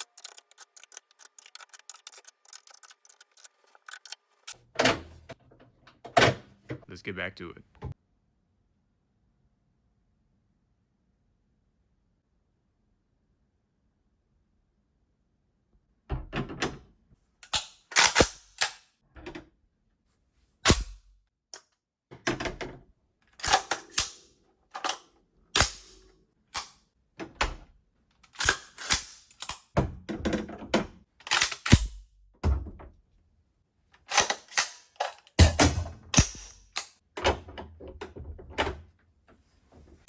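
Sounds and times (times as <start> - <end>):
hard objects clicking and knocking: 0.0 - 6.2, 34.0 - 38.7.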